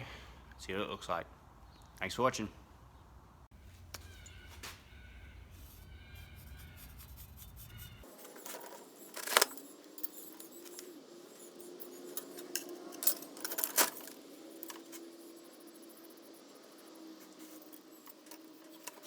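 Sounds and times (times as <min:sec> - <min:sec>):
metallic clinks and clatters: 0:08.0 - 0:19.0.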